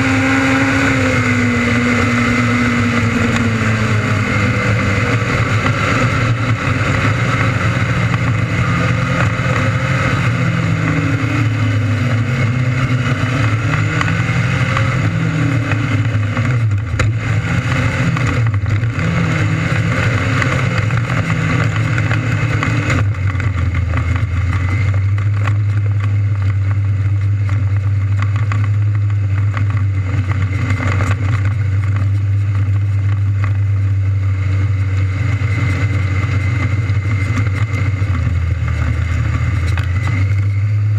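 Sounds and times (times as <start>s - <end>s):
sprint car engine running hard: 0.0s - 40.9s.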